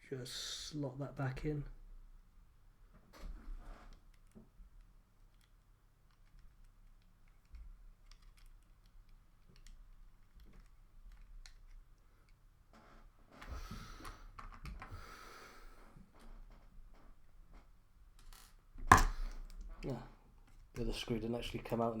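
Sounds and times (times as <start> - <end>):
plastic toy parts clicking: 3.9 - 12.4.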